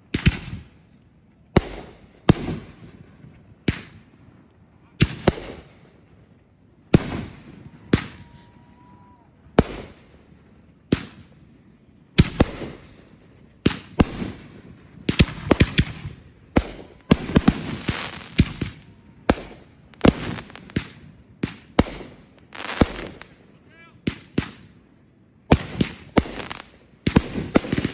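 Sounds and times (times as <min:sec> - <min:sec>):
fireworks booming and crackling: 0:00.0 - 0:27.9
firework whistle: 0:07.0 - 0:09.9.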